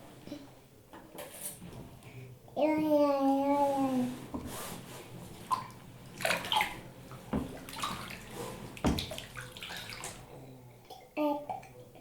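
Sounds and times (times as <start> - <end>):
bathwater splashing: 5.5 - 10.3.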